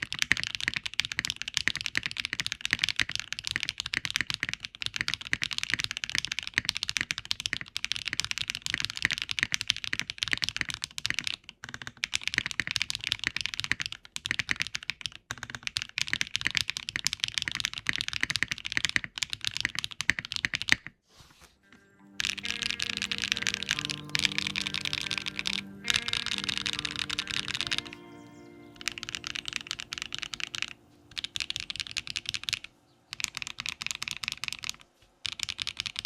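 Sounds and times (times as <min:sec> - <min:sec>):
mechanical keyboard typing: 0:00.0 - 0:20.9, 0:28.8 - 0:36.0.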